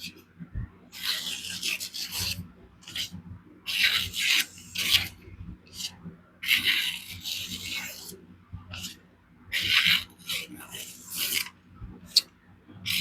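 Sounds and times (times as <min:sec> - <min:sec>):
knife blade rubbing strokes: 0:01.0 - 0:08.1.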